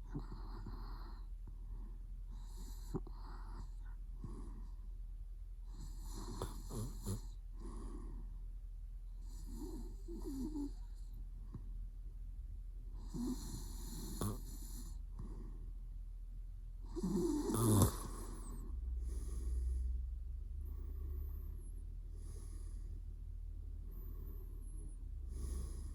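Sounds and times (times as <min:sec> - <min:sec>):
man snoring: 0:05.8 - 0:07.9, 0:09.2 - 0:10.9, 0:13.0 - 0:15.0, 0:16.9 - 0:19.9, 0:24.1 - 0:25.9.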